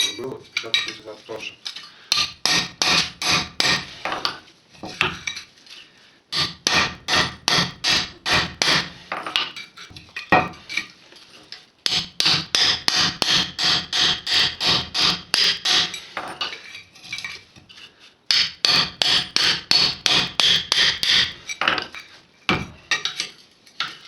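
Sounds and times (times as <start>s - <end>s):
hammer striking chisel on metal: 2.1s - 5.2s, 6.3s - 9.5s, 11.8s - 16.6s, 18.3s - 24.0s.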